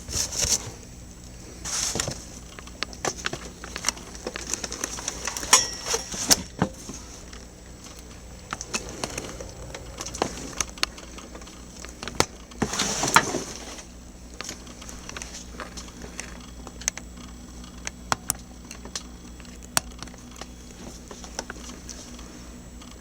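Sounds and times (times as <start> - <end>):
faint low hum: 0.0 - 12.6.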